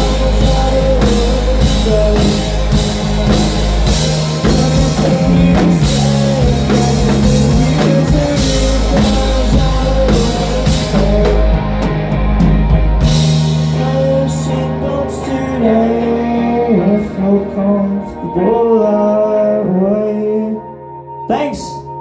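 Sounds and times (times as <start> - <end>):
held guitar notes: 0.0 - 22.0
live rock band playing: 0.0 - 22.0.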